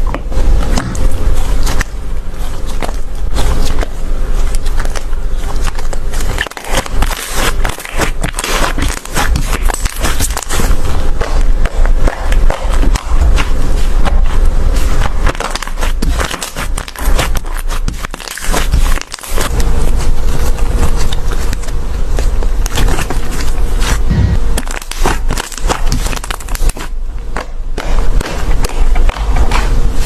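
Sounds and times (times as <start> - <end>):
slime squished by hand: 0.0 - 30.0.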